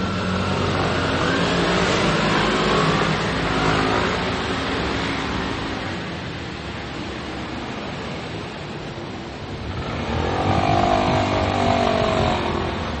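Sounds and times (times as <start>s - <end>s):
hum of passing vehicles: 0.0s - 13.0s
motor whine of passing vehicle: 9.6s - 13.0s.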